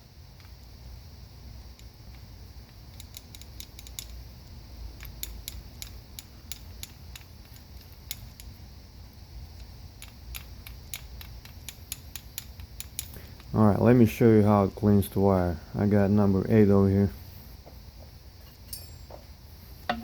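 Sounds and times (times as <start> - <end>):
small metallic clicks and taps: 1.8 - 4.2, 5.0 - 8.5, 9.6 - 13.5.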